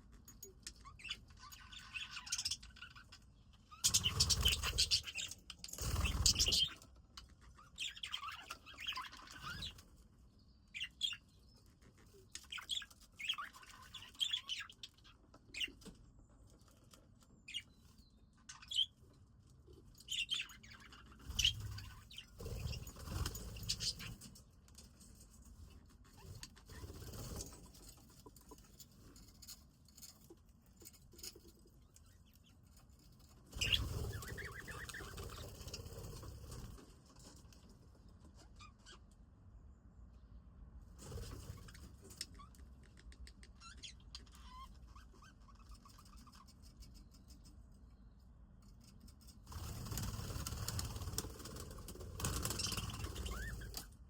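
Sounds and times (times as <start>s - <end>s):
budgies chirping: 0.8s - 6.8s, 7.5s - 9.8s, 10.7s - 11.3s, 11.9s - 15.9s, 17.5s - 19.0s, 20.0s - 24.3s, 33.5s - 36.3s, 49.6s - 53.9s
wings flapping: 3.9s - 6.8s, 21.3s - 24.3s, 33.5s - 36.8s, 49.5s - 53.9s.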